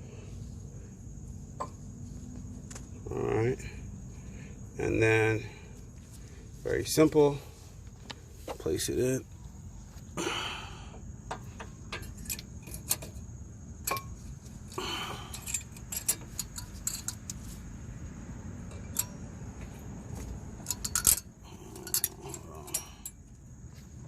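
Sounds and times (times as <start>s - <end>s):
metallic clicks and scrapes: 11.9s - 13.2s, 15.3s - 17.6s, 20.6s - 23.2s.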